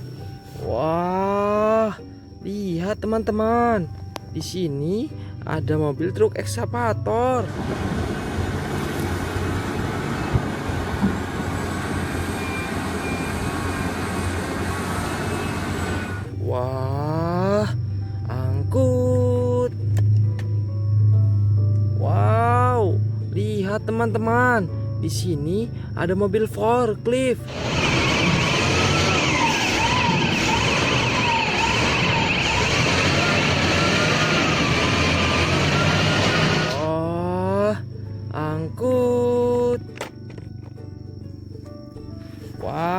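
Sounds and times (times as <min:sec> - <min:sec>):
toy excavator engine rumble: 0:07.2 - 0:16.4, 0:27.5 - 0:36.9
electronic siren wailing and warbling: 0:27.5 - 0:36.8.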